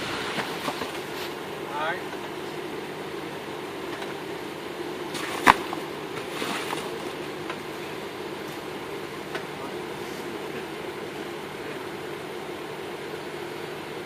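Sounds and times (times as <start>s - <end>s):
engine running at low revs: 0.0s - 14.0s.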